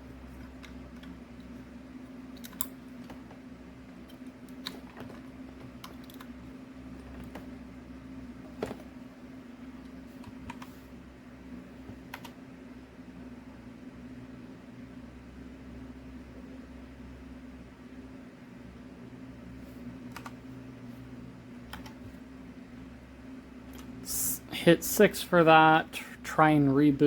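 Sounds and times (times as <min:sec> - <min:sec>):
steady low hum: 0:00.0 - 0:27.0
keyboard keystrokes: 0:02.4 - 0:03.3, 0:12.1 - 0:12.4, 0:20.1 - 0:20.4, 0:21.7 - 0:22.1.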